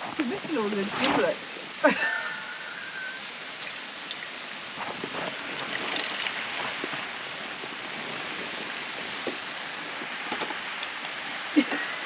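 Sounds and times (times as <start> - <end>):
steady rain hissing: 0.0 - 12.0
raindrops tapping: 3.5 - 12.0.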